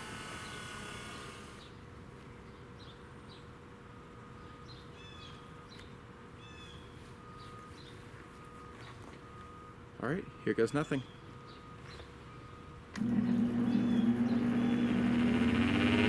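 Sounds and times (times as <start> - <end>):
faint bird chirps: 4.2 - 12.8
multi-tone whine: 11.3 - 16.0
low hum: 13.0 - 16.0.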